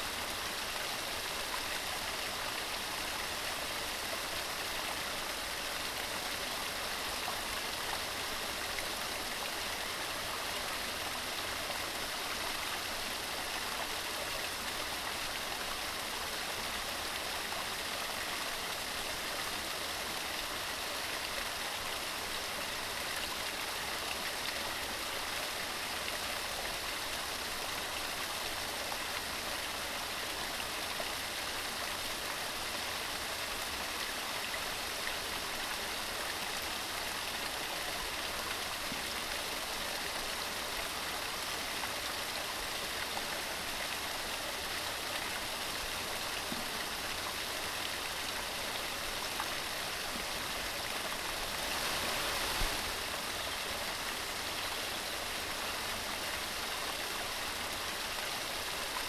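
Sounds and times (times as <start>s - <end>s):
stream rushing over rocks: 0.0s - 59.0s.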